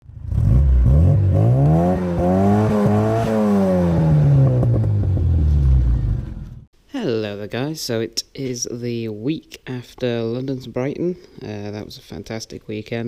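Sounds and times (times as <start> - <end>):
car engine revving: 0.0 - 6.7.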